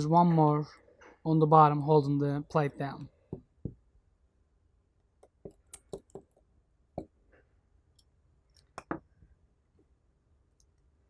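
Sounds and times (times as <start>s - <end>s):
screwdriver clicks and metallic clinks: 5.2s - 6.4s, 7.9s - 9.0s.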